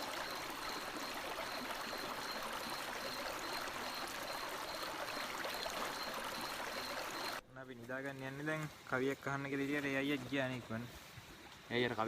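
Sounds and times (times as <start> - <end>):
insect trilling: 0.0 - 7.4
river water flowing: 0.0 - 7.4.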